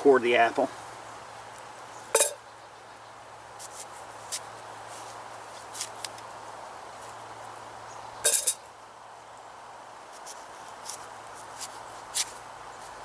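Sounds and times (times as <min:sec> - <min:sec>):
knife cutting crisp apple: 0:10.2 - 0:12.4.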